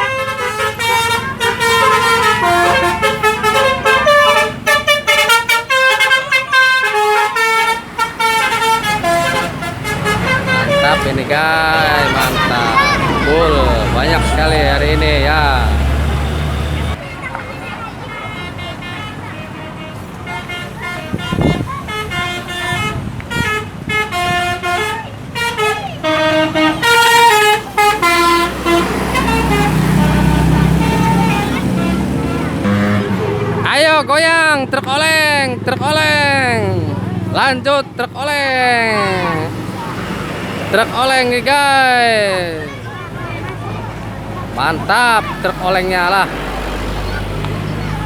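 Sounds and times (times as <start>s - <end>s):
bus musical air horn melody: 0.0s - 17.0s, 18.2s - 33.8s, 39.0s - 40.7s
low engine rumble: 0.3s - 17.0s.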